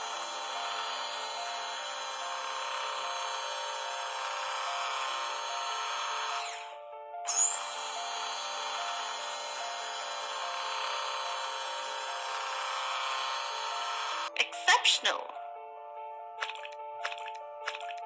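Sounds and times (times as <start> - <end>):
dental drill whining: 0.0 - 14.4
background music: 0.0 - 18.0.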